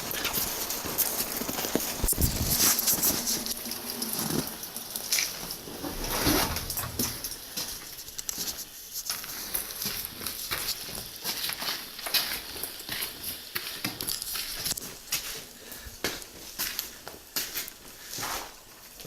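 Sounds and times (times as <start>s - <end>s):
footsteps on rough ground: 5.2s - 18.6s.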